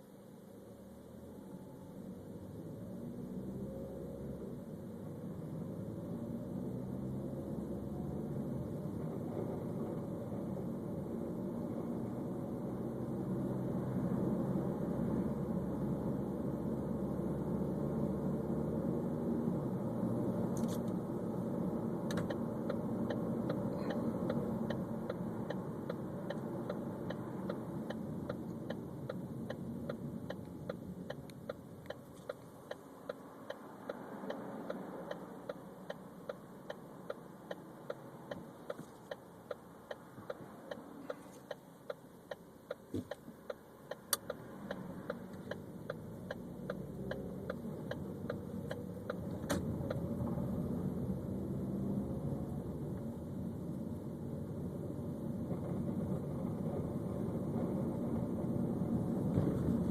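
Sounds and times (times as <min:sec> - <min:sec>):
car interior rumble: 0:00.0 - 0:59.9
regular ticking rattle: 0:20.5 - 0:53.2.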